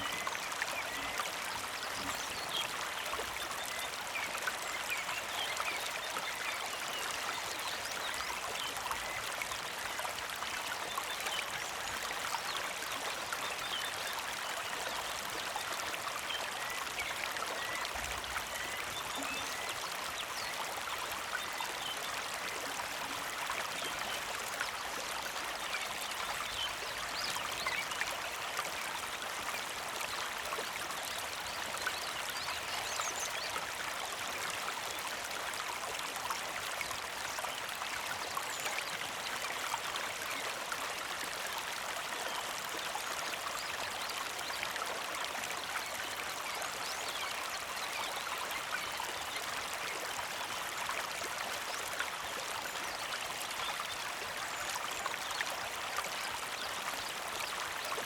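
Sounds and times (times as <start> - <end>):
creek trickling and splashing: 0.0 - 58.0.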